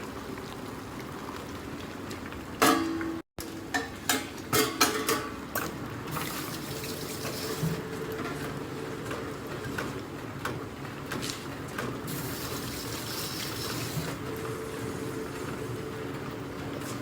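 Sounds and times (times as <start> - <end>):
water running and splashing: 12.1 - 14.2.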